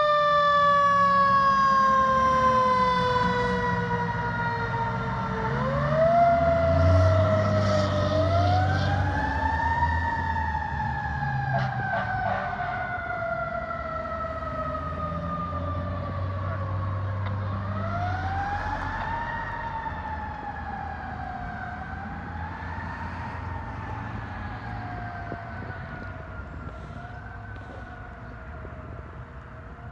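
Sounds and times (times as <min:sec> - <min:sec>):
mechanical siren wailing: 0:00.0 - 0:29.9
truck engine rumble: 0:00.4 - 0:29.9.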